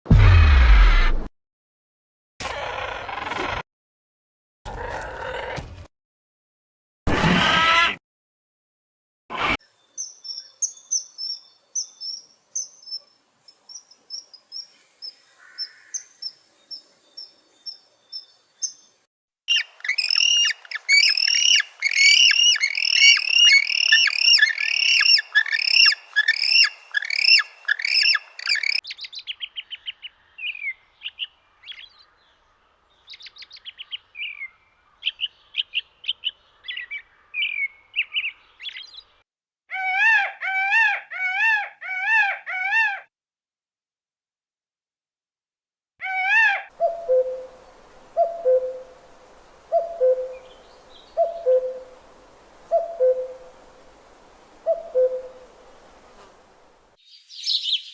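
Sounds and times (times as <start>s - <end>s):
small birds chirping: 9.8s - 39.2s, 46.8s - 57.9s.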